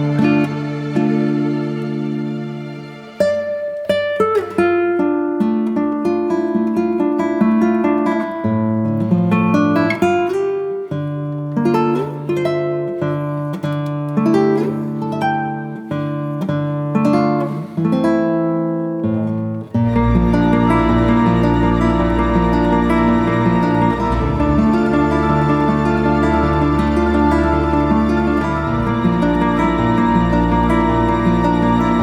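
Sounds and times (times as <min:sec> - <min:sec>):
plucked acoustic guitar melody: 0:00.0 - 0:32.0
bass line: 0:19.9 - 0:32.0.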